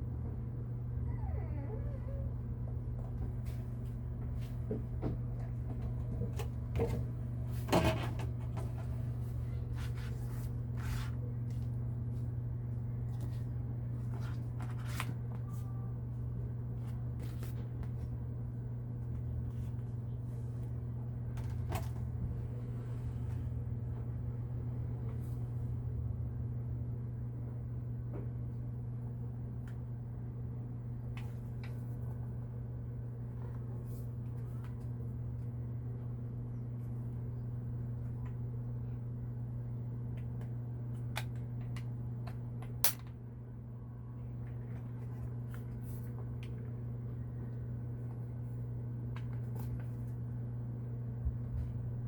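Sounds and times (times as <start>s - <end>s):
steady low hum: 0.0s - 52.0s.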